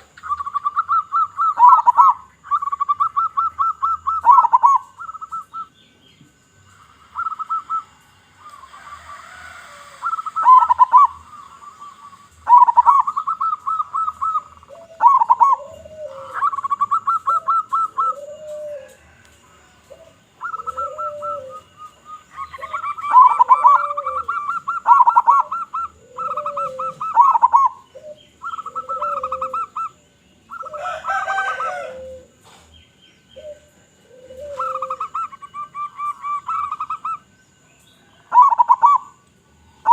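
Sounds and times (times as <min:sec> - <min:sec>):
doves cooing staccato phrases: 0:00.0 - 0:05.8, 0:06.4 - 0:37.4, 0:38.1 - 0:39.2
harsh bird call: 0:06.8 - 0:19.2, 0:20.0 - 0:32.4, 0:33.4 - 0:37.3
low drawn-out coo: 0:12.5 - 0:29.9, 0:30.5 - 0:32.6, 0:33.4 - 0:37.2.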